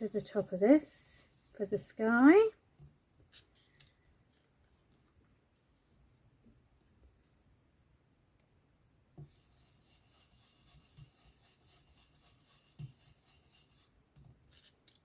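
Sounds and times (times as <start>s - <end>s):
paintbrush rubbing on cardstock: 0.0s - 2.0s, 9.3s - 14.0s.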